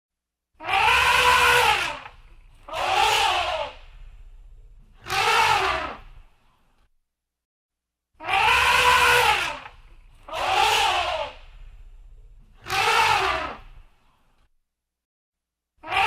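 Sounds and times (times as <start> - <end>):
elephant trumpeting: 0.6 - 6.2, 8.3 - 13.8
low rumble: 3.8 - 5.0, 11.4 - 12.6.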